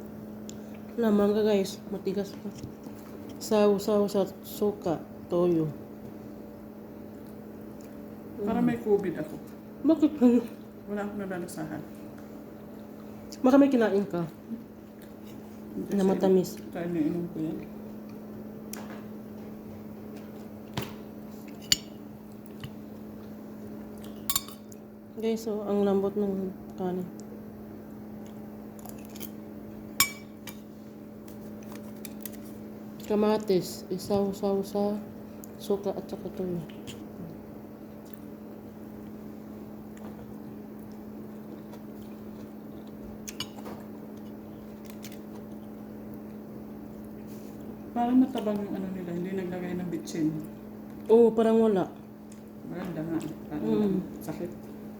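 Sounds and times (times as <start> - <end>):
steady low hum: 0.0 - 54.9
quiet chewing: 2.2 - 3.5, 7.1 - 8.1, 14.0 - 16.8, 20.0 - 24.9, 26.6 - 29.5, 36.6 - 48.8, 50.3 - 51.2, 51.9 - 54.8.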